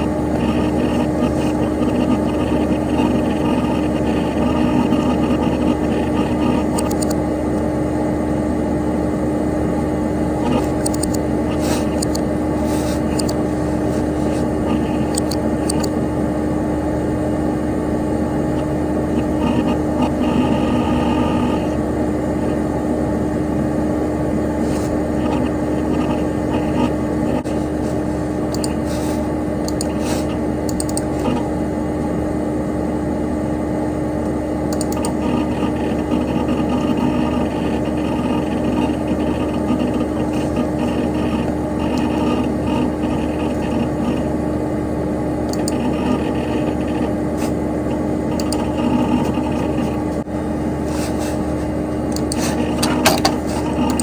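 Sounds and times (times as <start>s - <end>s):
hard drive clicks: 0.0s - 7.7s, 9.8s - 16.1s, 18.5s - 22.6s, 24.5s - 32.1s, 34.7s - 44.4s, 45.4s - 50.3s, 51.4s - 54.0s
computer fan whir and hum: 0.0s - 54.0s.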